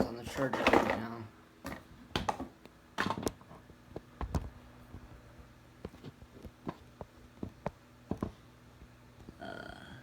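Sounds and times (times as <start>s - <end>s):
objects knocking and clicking: 1.6s - 3.6s.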